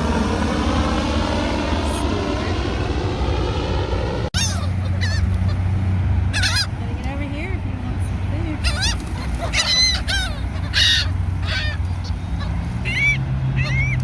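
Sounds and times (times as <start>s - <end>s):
seagulls calling: 4.0s - 14.0s.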